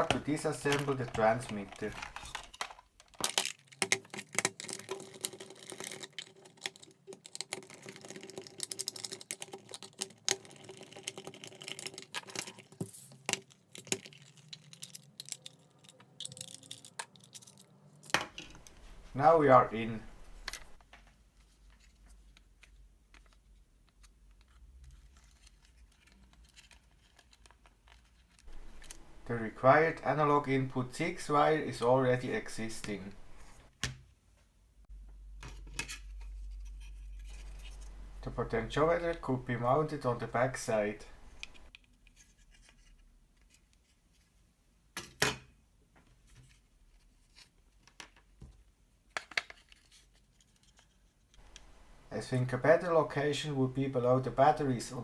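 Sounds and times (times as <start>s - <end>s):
small plastic parts clicking: 0.0s - 18.8s.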